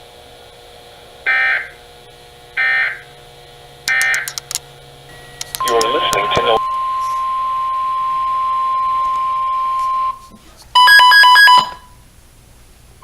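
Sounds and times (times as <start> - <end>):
radio hiss: 3.9 - 7.4
steady high electronic tone: 3.9 - 10.2.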